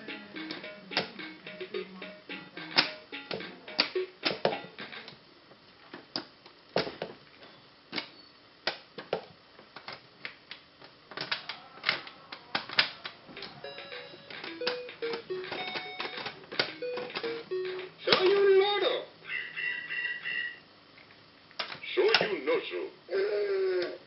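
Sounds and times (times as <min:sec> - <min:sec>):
toy buttons clicking: 0:00.1 - 0:05.2, 0:12.6 - 0:18.4.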